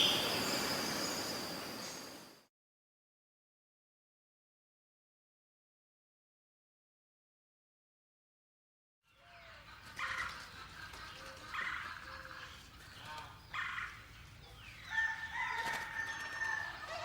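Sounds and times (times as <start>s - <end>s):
chickens calling: 9.3s - 17.0s
rooster crowing: 14.8s - 17.0s.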